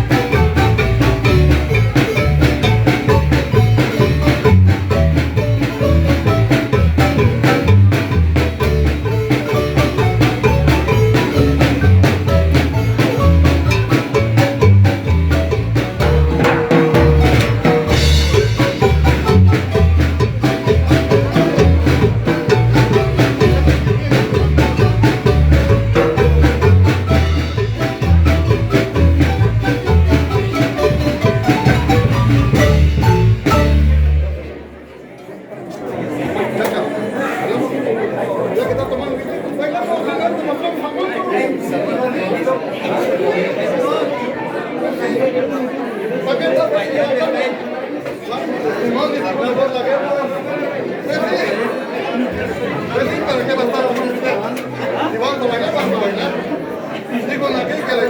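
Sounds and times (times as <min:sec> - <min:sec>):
steady bass beat: 0:00.0 - 0:34.4
marimba notes: 0:00.0 - 0:34.9.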